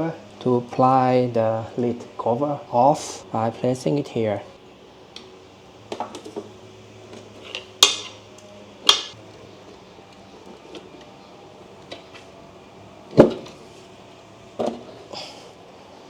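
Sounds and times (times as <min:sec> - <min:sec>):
screwdriver prying clacks: 0:07.4 - 0:08.2.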